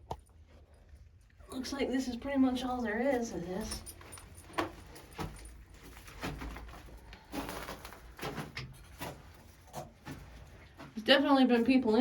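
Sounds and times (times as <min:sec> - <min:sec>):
gear clicks and rustles: 0:02.8 - 0:11.0.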